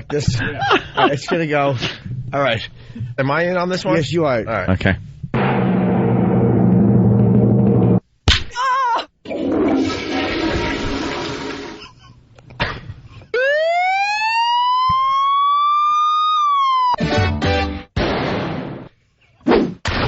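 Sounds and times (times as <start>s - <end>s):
toilet flushing: 9.3s - 11.9s
siren-like wail: 13.4s - 17.0s.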